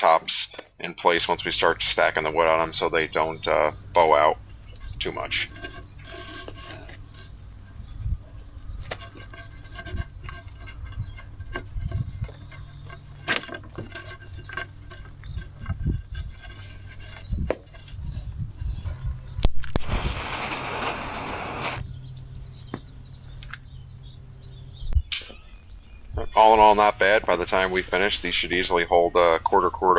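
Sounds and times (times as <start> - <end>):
steady low hum: 0.0 - 26.2
knocks and rattles of wood: 8.1 - 19.0
loud rushing hiss: 19.8 - 21.8.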